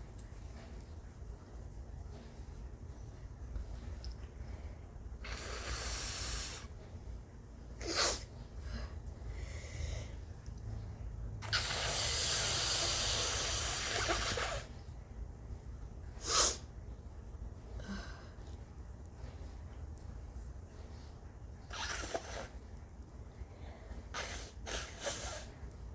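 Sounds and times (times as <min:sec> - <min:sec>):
person blowing nose: 0:05.2 - 0:06.7, 0:07.8 - 0:08.3, 0:11.4 - 0:14.8, 0:21.7 - 0:22.6, 0:24.1 - 0:25.6.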